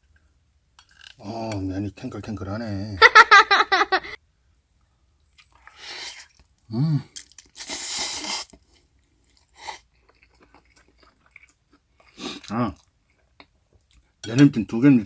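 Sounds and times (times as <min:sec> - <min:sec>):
chewing: 0:05.3 - 0:14.2
slurping noodles: 0:07.6 - 0:08.6.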